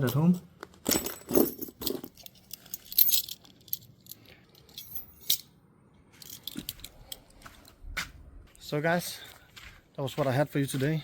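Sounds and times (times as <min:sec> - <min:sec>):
keys jangling on a keychain: 0:00.9 - 0:05.5, 0:06.2 - 0:07.3.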